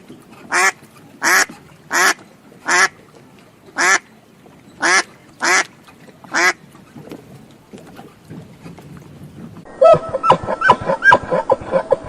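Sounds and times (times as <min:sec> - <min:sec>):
duck quacking: 0:04.8 - 0:05.7, 0:06.3 - 0:06.6.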